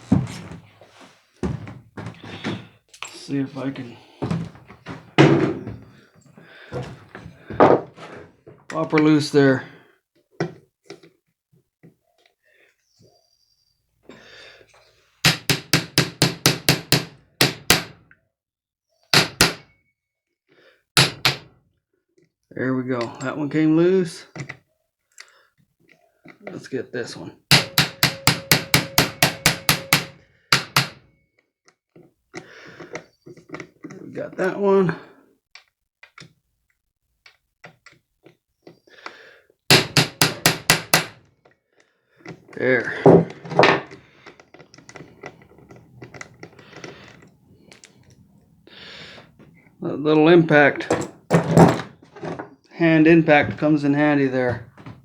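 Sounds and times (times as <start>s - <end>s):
hammer blows on impact driver: 27.5s - 31.0s.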